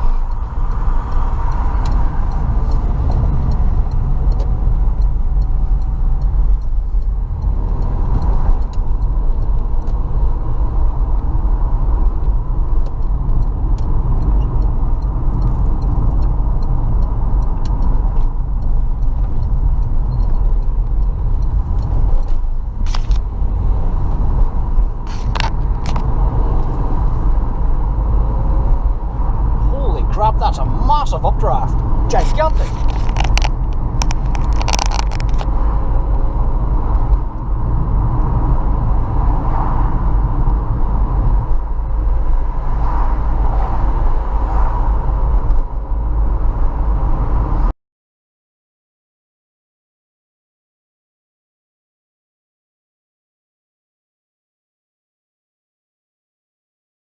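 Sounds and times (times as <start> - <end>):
car road and engine rumble: 0.0 - 47.7
sharp clicks: 31.7 - 35.5.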